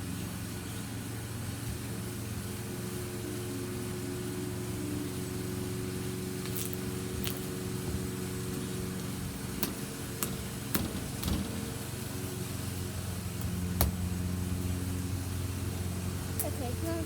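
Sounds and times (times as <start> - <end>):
low machine hum: 0.0 - 17.0
slime squelching: 6.4 - 7.6.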